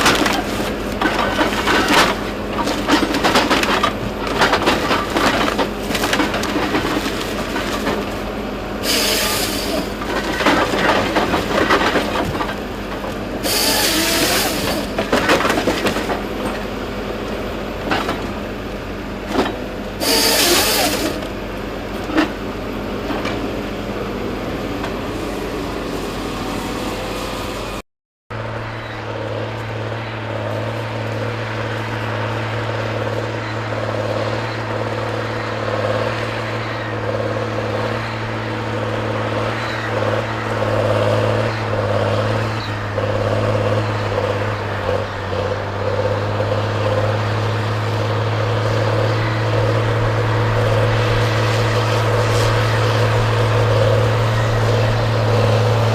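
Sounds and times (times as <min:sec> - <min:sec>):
wood cracking and knocking: 0:00.0 - 0:08.2
heavy machine engine running: 0:00.0 - 0:55.9
low machine engine drone: 0:00.0 - 0:55.9.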